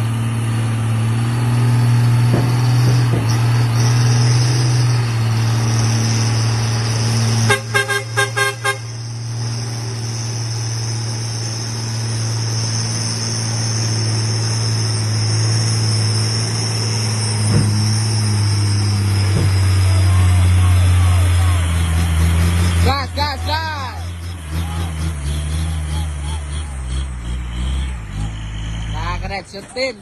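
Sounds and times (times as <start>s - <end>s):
truck diesel engine running: 0.0s - 30.0s
vehicle horn tooting: 7.4s - 9.0s.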